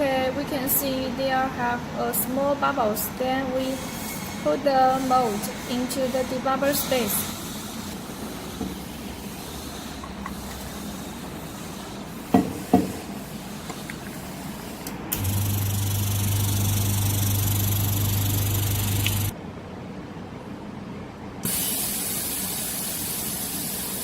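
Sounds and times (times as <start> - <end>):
machine hiss of air: 3.6 - 19.4, 21.4 - 24.0
low mains hum: 7.3 - 21.5.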